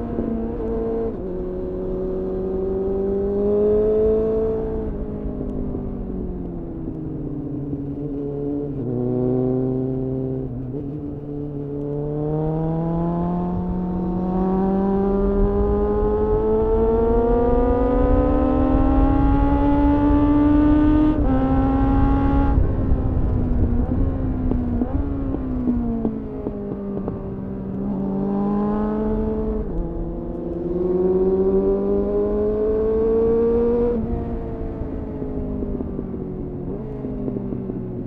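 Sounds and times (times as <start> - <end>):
motorcycle engine revving: 7.8 - 38.0.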